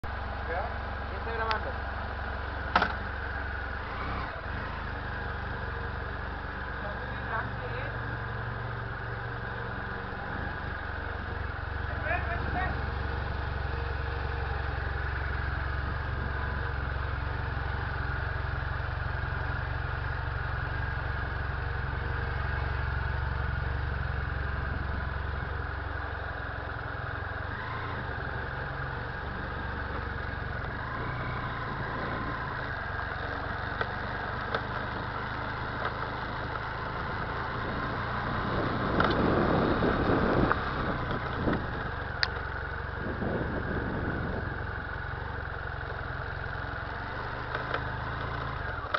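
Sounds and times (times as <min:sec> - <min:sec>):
motorcycle engine idling: 0:00.0 - 0:48.9
sharp knocks: 0:02.7 - 0:03.0.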